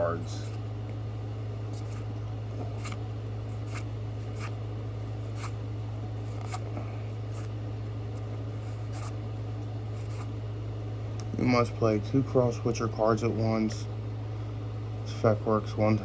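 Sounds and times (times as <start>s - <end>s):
steady low hum: 0.0s - 16.0s
cards sliding with papery swish: 1.7s - 4.6s, 6.2s - 7.6s.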